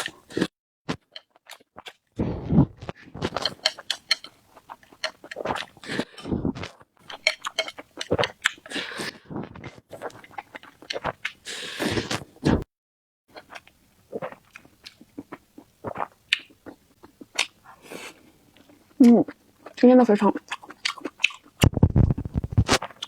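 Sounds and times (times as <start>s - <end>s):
person chewing food: 0.0s - 12.6s, 13.3s - 23.0s
wet mouth clicks: 20.6s - 23.0s.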